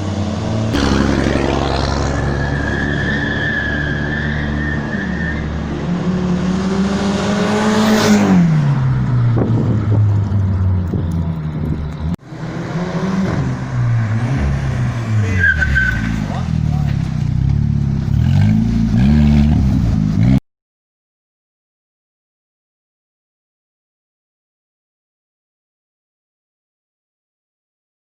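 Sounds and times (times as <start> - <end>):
engine revving: 0.0 - 20.4.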